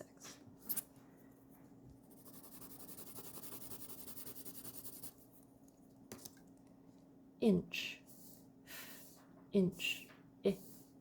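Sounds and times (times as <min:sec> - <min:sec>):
scribbling on paper: 0:02.1 - 0:05.2.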